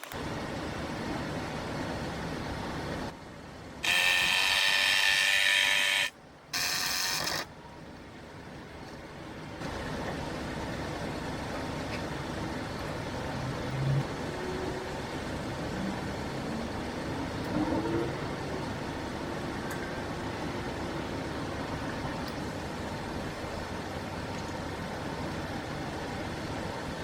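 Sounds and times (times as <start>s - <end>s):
vehicle engine and road noise: 8.8s - 19.3s.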